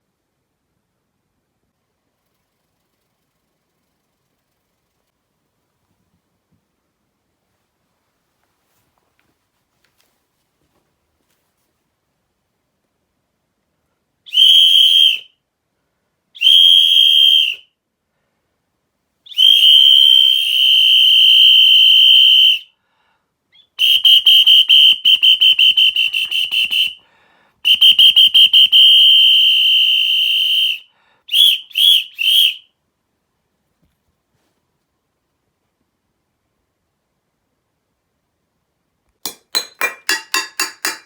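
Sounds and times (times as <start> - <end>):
whistle blasts: 14.3 - 15.3, 16.4 - 17.7, 19.3 - 22.7, 23.6 - 27.0, 27.6 - 32.7.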